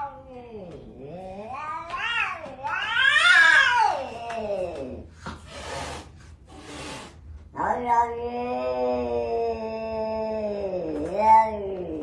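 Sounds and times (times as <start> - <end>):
cat yowling: 0.0 - 5.0, 7.6 - 12.0.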